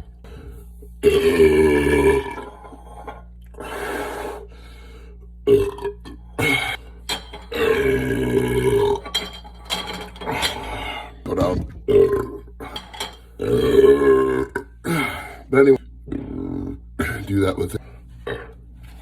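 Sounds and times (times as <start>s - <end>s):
man belching: 1.0s - 2.7s, 5.4s - 6.8s, 7.5s - 9.1s, 11.2s - 12.7s, 13.4s - 17.1s.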